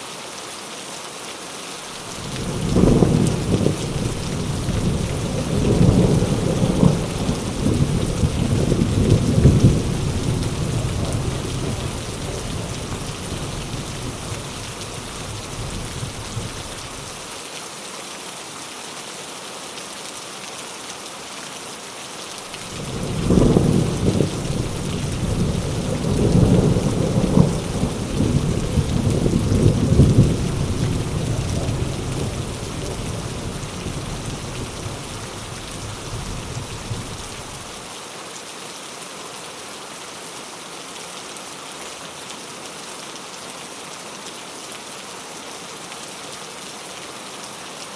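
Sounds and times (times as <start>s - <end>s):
heavy rain: 0.0s - 47.9s
rolling thunder: 2.2s - 17.1s, 22.6s - 37.8s.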